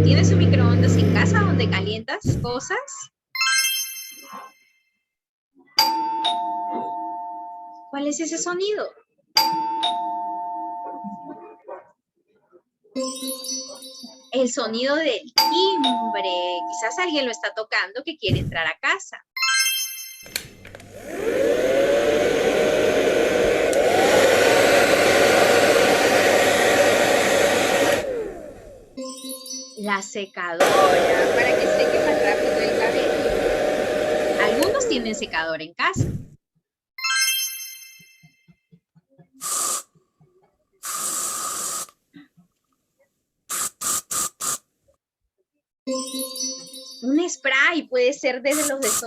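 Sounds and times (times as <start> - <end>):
hair dryer running: 20.4 - 29.0, 30.6 - 35.4
hair dryer switch click: 23.5 - 25.0
aerosol spray hissing: 39.4 - 39.9, 40.8 - 41.9, 43.5 - 44.6, 48.5 - 49.0.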